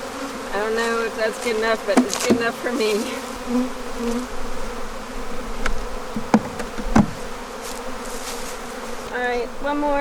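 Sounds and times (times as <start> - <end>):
bees buzzing: 0.0 - 10.0.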